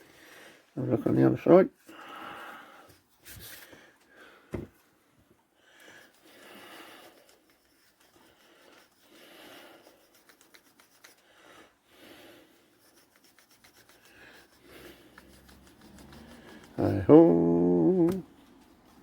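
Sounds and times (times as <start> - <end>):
soft scraping rubbing strokes: 2.4 - 3.9, 5.9 - 11.2, 12.1 - 19.0.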